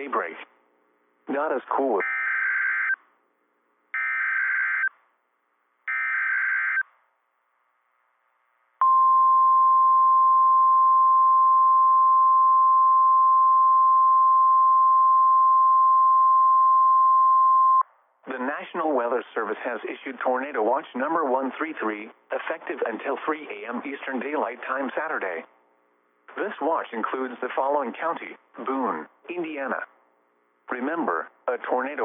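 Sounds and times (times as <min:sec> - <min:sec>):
steady warning alarm tone: 0:04.0 - 0:04.9, 0:05.9 - 0:06.8.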